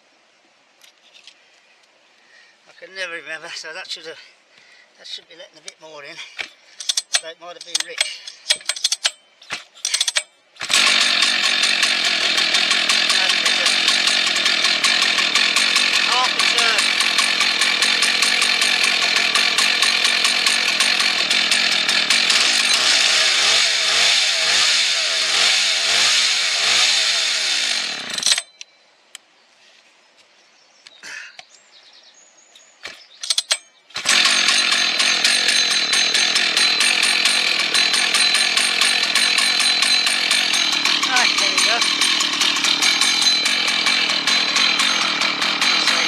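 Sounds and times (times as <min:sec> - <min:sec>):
chainsaw engine running: 0:10.6 - 0:28.5, 0:33.9 - 0:46.0.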